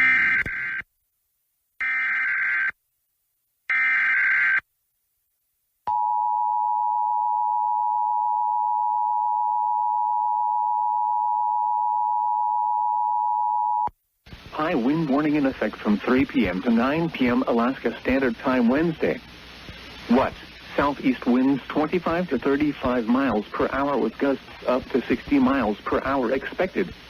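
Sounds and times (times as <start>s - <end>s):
steady alarm tone: 1.8s - 2.8s.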